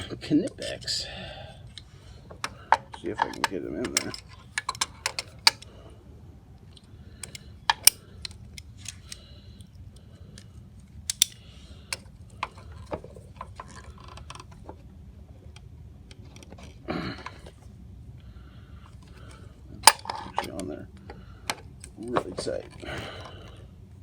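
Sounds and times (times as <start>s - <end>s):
steady low hum: 0.0s - 24.0s
hand tool metallic clicks: 1.7s - 5.7s, 7.2s - 9.2s, 11.1s - 12.0s.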